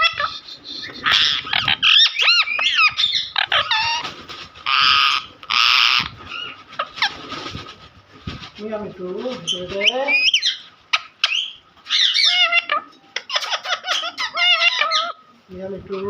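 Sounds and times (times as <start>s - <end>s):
parrot warbling and whistling: 0.0s - 4.0s, 10.1s - 15.2s
parrot squawks: 0.0s - 7.2s, 10.1s - 15.2s.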